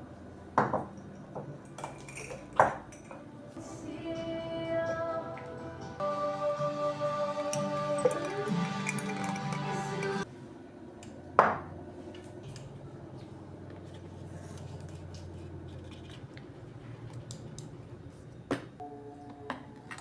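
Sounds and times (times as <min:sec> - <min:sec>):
background music: 0:00.0 - 0:10.3
dishes clinking: 0:00.6 - 0:03.3, 0:07.4 - 0:10.3.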